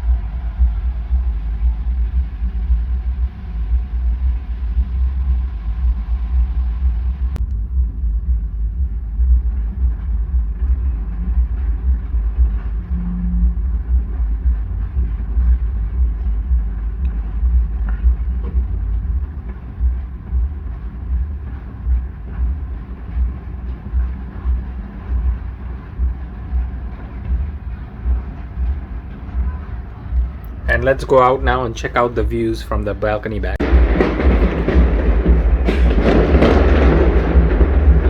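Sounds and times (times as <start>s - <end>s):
distant fireworks rumble: 0.0s - 38.0s.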